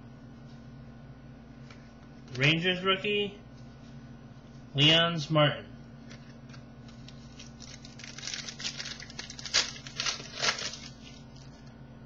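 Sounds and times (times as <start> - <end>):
cards rustling and crinkling: 6.1 - 11.7.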